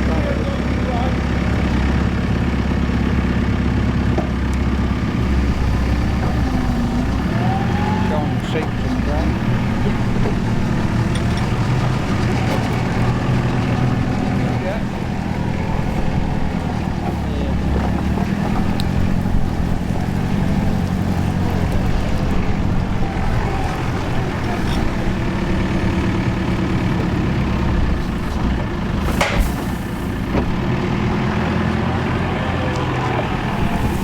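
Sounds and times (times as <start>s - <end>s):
tractor diesel engine running: 0.0s - 34.0s
machine blowing straw: 29.0s - 34.0s
short sharp clatter: 29.1s - 30.1s.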